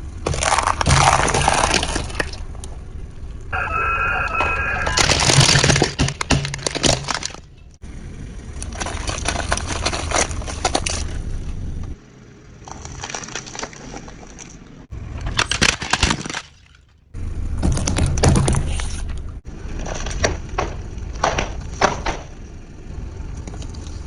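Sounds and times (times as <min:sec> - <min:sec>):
objects crunching and cracking: 0:00.0 - 0:02.8, 0:04.4 - 0:07.8, 0:08.6 - 0:11.7, 0:12.6 - 0:17.0, 0:17.6 - 0:22.4
low engine rumble: 0:00.0 - 0:15.5, 0:16.9 - 0:24.0.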